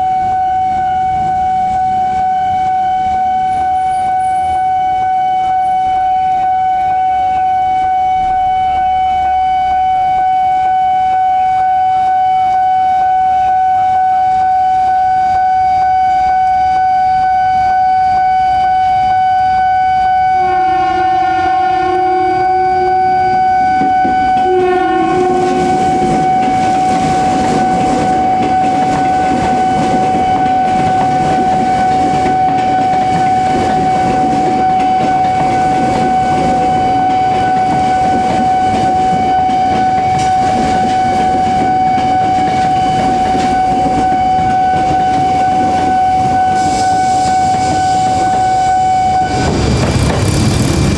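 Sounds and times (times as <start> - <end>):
locomotive horn blowing: 0.0 - 50.8
electronic warning tone: 18.6 - 50.7
train wheels rumbling and clacking: 18.9 - 50.9.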